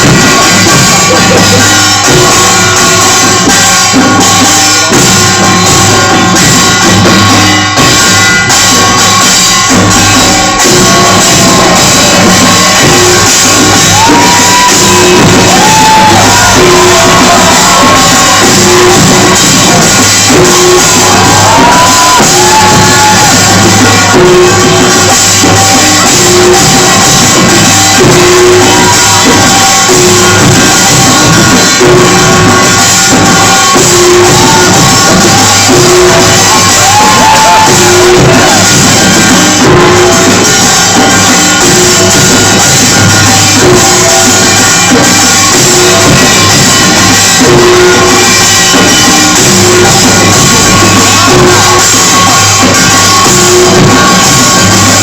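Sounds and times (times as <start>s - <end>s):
percussion band with drums and gongs: 0.0s - 55.0s
voices shouting and whooping: 10.9s - 24.7s, 33.4s - 38.7s.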